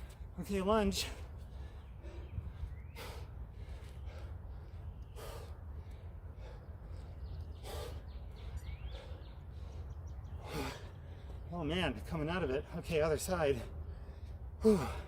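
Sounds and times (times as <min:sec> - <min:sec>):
man breathing hard: 0:01.2 - 0:11.5, 0:13.6 - 0:15.0.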